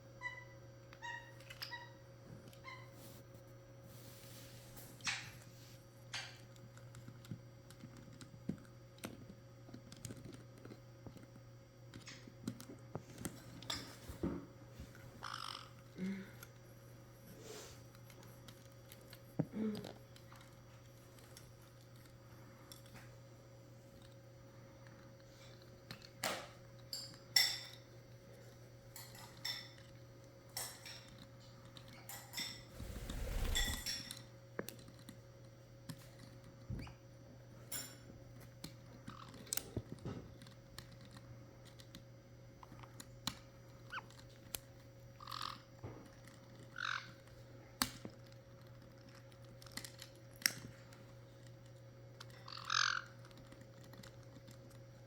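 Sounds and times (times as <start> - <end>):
parrots pecking with clicks: 6.1 - 14.0, 17.9 - 23.1, 24.8 - 32.5, 37.8 - 55.0
steady low hum: 32.4 - 34.3.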